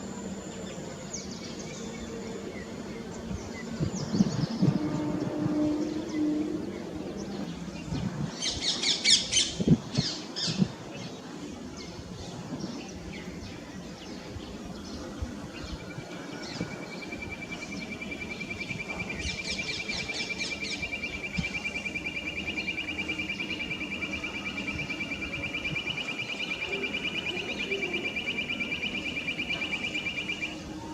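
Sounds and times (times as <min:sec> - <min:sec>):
high bird trill: 0:15.7 - 0:30.9.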